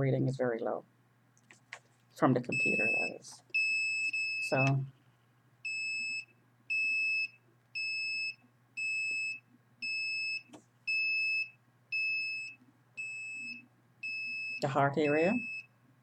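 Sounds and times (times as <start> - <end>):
signal detector beeping: 2.4 - 4.9, 5.7 - 15.7.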